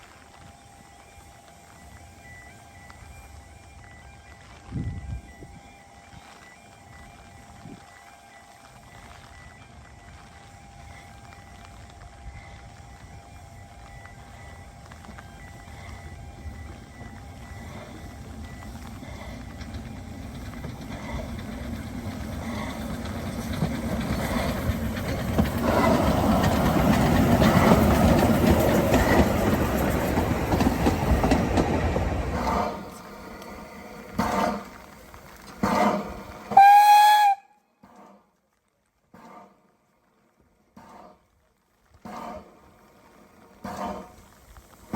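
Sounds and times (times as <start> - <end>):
steam train running past: 0.0 - 38.2, 40.7 - 44.9
steam whistle blast: 36.5 - 37.6.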